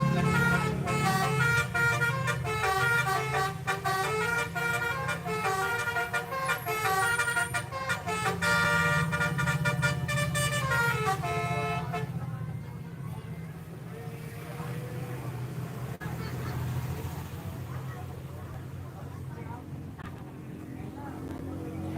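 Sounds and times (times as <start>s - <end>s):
bus horn playing melody: 0.0s - 12.2s
bus engine running: 0.0s - 21.9s.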